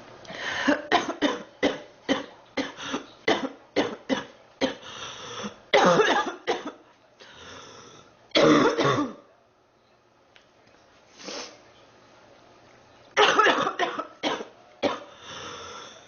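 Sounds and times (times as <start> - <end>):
breathy breathing: 0.2 - 0.9, 4.7 - 5.6, 7.2 - 8.2, 15.0 - 16.0
girl coughing: 0.7 - 4.8, 5.8 - 6.8, 8.4 - 9.2, 13.2 - 15.1.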